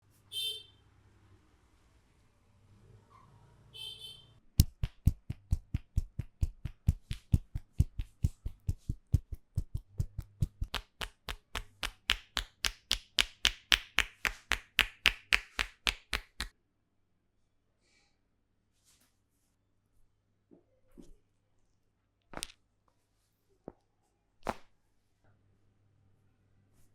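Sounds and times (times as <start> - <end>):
hands slapping and tapping head: 4.6 - 16.5, 22.3 - 22.6, 24.4 - 24.7.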